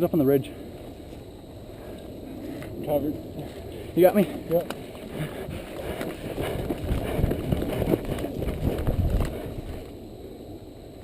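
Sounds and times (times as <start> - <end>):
footsteps running on woodland ground: 3.5 - 9.8.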